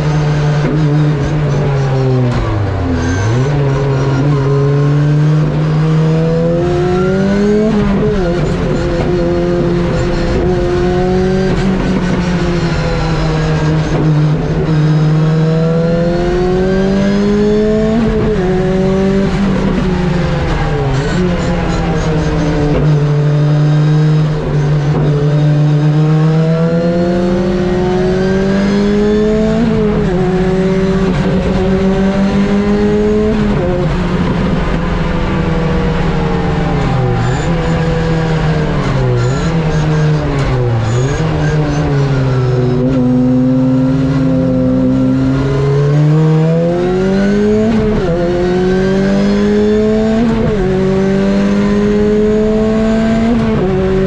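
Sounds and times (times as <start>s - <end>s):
car engine revving through gear changes: 0.0s - 54.0s.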